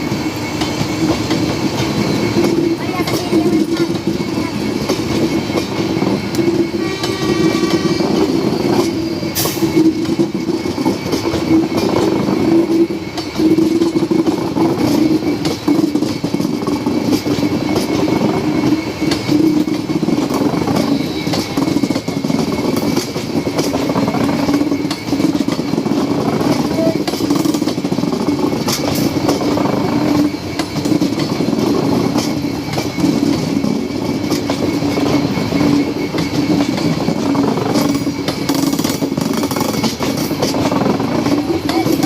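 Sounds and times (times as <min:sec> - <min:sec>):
train rumbling past: 0:00.0 - 0:42.0
wheels clicking over rail joints: 0:00.6 - 0:07.2, 0:08.1 - 0:42.0.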